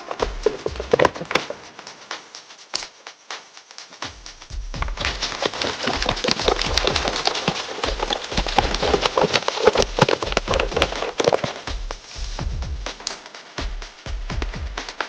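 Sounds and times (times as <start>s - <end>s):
crackling spattering noise: 0.0s - 4.0s, 4.8s - 12.4s
music with bass beat: 0.0s - 15.0s.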